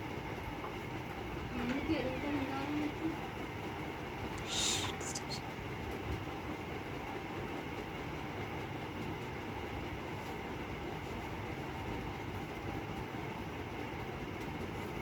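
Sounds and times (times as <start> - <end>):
ceiling fan whooshing hum: 0.0 - 15.0.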